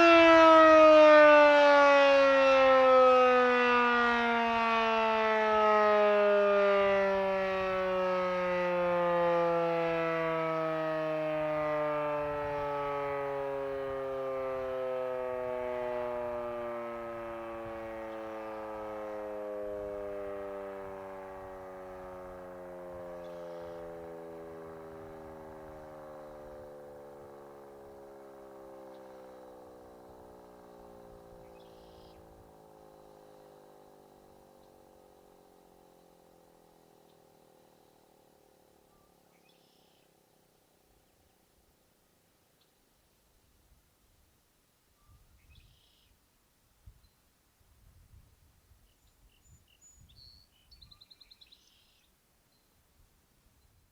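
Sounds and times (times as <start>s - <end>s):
warning siren winding down: 0.0s - 38.0s.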